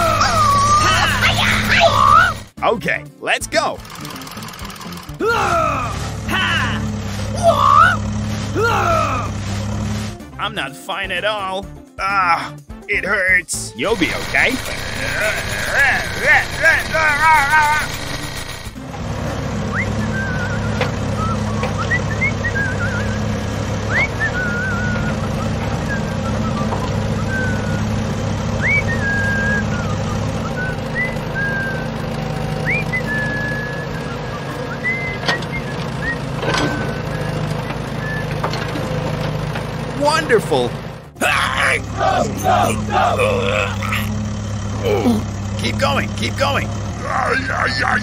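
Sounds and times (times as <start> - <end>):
truck engine running: 0.0 - 10.5, 13.6 - 48.0.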